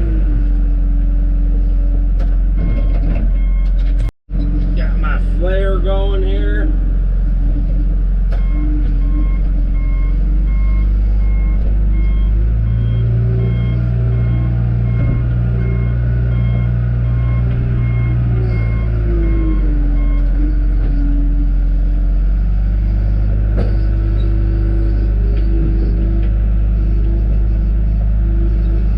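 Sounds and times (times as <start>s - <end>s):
diesel engine running: 0.0s - 28.9s
backup alarm beeping: 8.4s - 21.1s.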